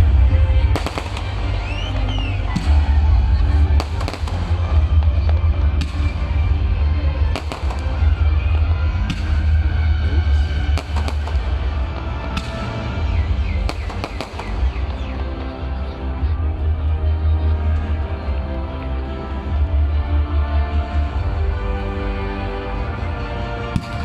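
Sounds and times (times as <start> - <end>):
music with heavy bass: 0.0 - 24.0
fireworks bangs: 0.6 - 6.5, 7.2 - 9.6, 10.6 - 15.1.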